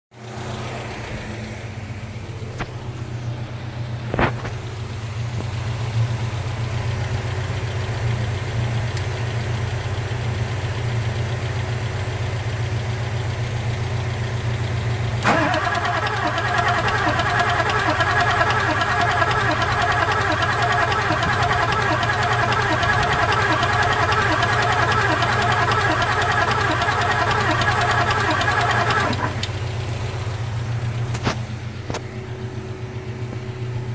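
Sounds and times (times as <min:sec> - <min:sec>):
fast mechanical rattling: 0:15.2 - 0:29.6.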